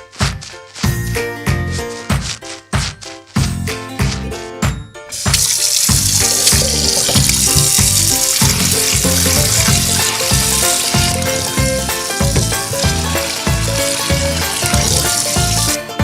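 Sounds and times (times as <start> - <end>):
bouncy children's music: 0.0 - 16.0
cartoon frying pan sizzle: 5.1 - 15.9.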